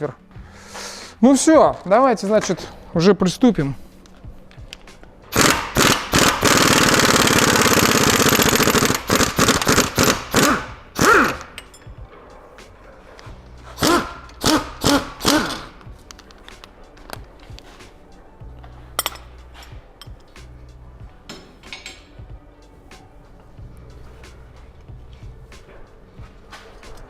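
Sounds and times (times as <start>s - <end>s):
air impact wrench hammering: 5.3s - 11.7s, 13.7s - 15.8s.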